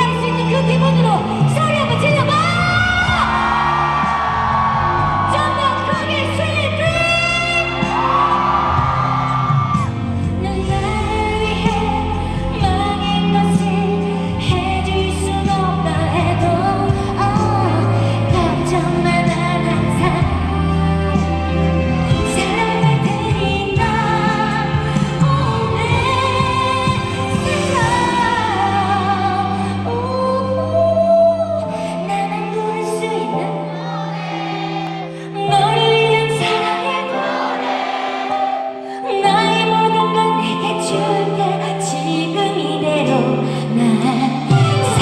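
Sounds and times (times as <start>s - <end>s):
woman singing pop: 0.0s - 3.8s, 5.2s - 8.3s, 10.3s - 33.8s, 35.1s - 37.5s, 38.9s - 45.0s
band accompaniment: 1.2s - 29.6s, 44.4s - 45.0s.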